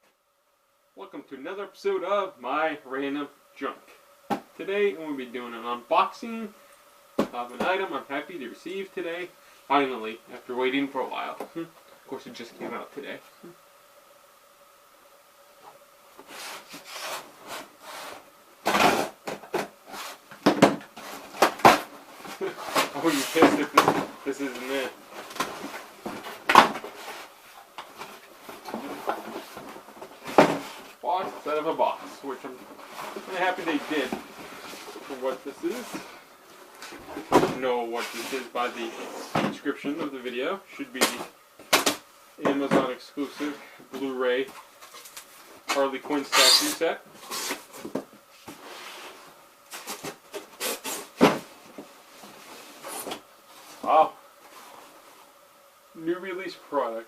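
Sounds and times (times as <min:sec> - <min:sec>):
cardboard rustling: 0:16.2 - 0:40.2, 0:41.0 - 0:55.3.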